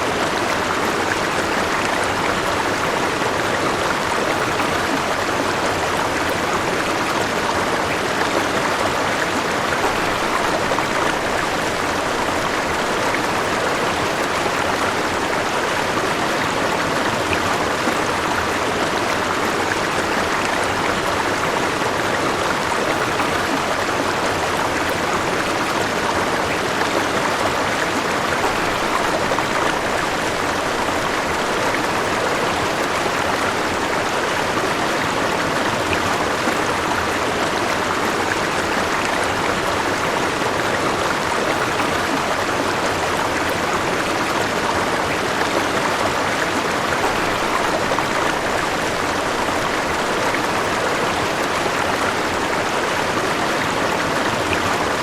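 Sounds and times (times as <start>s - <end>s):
river water flowing over rocks: 0.0s - 55.0s.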